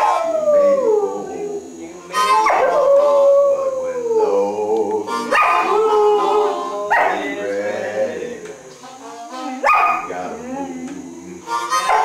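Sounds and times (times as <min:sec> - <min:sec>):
dog howling: 0:00.0 - 0:08.4, 0:09.6 - 0:12.0.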